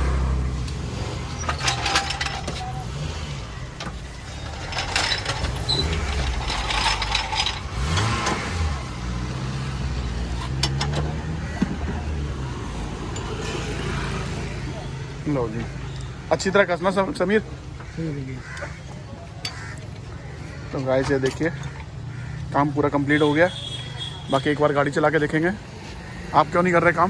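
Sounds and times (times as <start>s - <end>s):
car engine running: 0.0s - 11.2s
metallic clinks and clatter: 1.1s - 9.0s.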